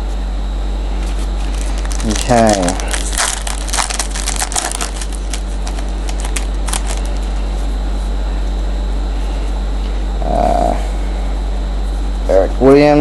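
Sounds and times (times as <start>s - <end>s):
low hum and hiss: 0.0s - 13.0s
foil pack crinkling: 1.0s - 7.4s.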